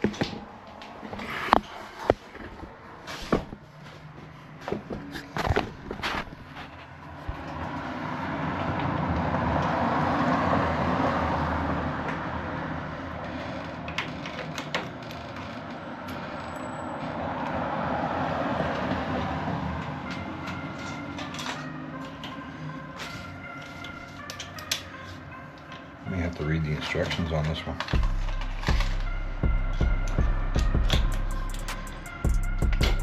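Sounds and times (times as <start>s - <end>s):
vehicles passing by: 0.0s - 33.0s
clicks and knocks of handled parts: 19.8s - 22.4s, 23.0s - 25.0s.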